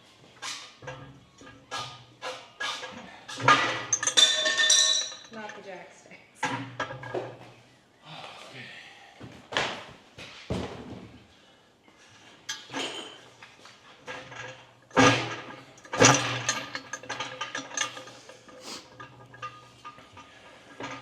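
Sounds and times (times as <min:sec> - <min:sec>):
metal clanks and knocks: 0:00.8 - 0:05.6, 0:14.0 - 0:21.0.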